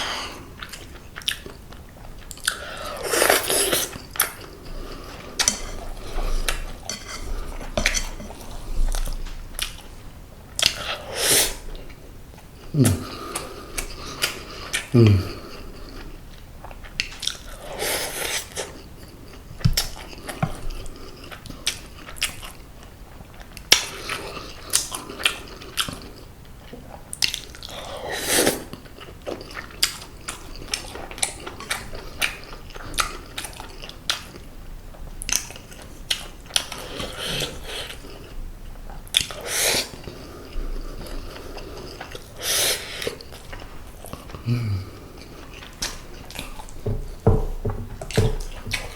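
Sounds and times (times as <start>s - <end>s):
wet chewing and smacking: 0.5s - 10.0s, 15.6s - 27.9s, 28.5s - 44.4s, 45.1s - 47.3s, 48.0s - 48.9s
wet sucking sounds: 42.4s - 43.2s.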